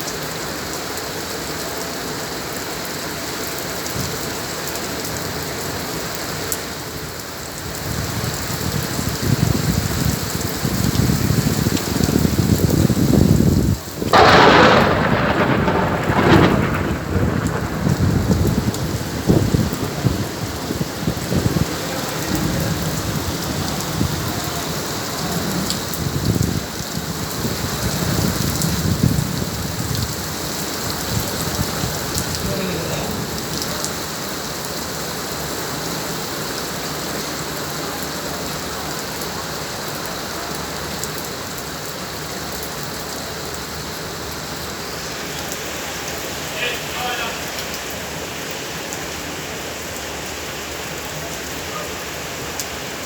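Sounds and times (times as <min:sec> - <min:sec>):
steady rain falling: 0:00.0 - 0:53.0
thunder rumbling: 0:07.9 - 0:34.4.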